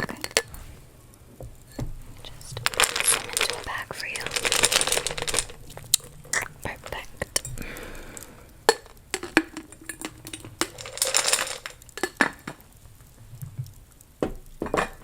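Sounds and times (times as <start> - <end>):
candy clicking and clinking: 0.0 - 0.6, 1.6 - 12.8
wrappers crinkling: 1.6 - 7.8.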